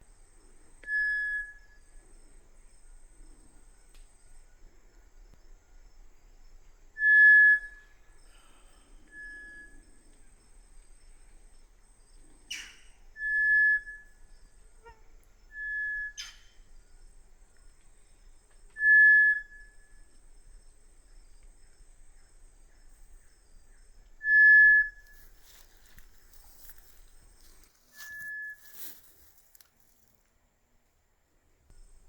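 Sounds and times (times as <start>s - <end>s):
bird whistles: 7.0s - 7.9s, 9.1s - 9.8s, 12.5s - 14.2s, 14.8s - 16.6s, 18.8s - 19.9s, 24.2s - 25.4s, 27.9s - 28.9s.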